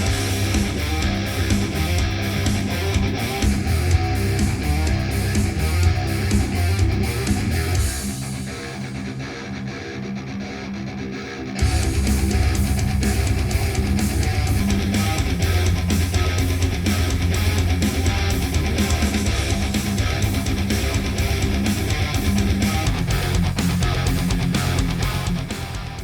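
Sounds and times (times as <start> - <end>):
rock music through speakers: 0.0 - 26.0.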